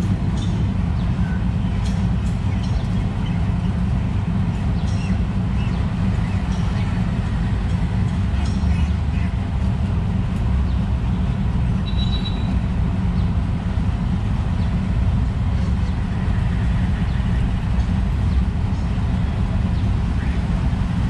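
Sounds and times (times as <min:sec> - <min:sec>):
low outdoor background rumble: 0:00.0 - 0:21.0
bird chirp: 0:11.8 - 0:12.6.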